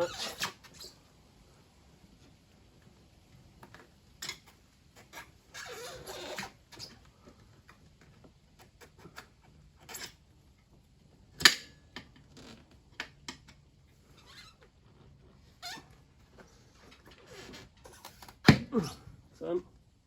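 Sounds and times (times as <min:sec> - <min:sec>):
rubbing scrape on tyre: 0:00.0 - 0:00.9, 0:05.0 - 0:07.0.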